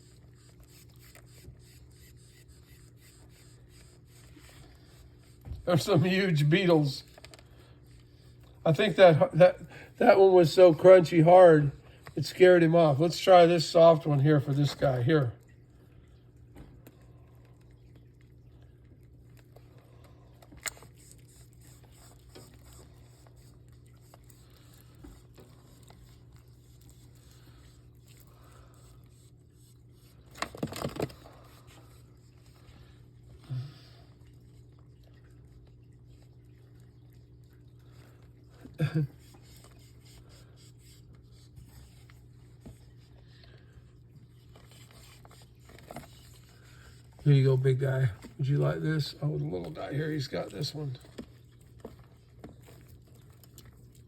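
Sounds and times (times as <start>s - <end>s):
faint scratching and rubbing: 0.0s - 9.1s, 44.2s - 53.4s
steady low hum: 0.0s - 54.0s.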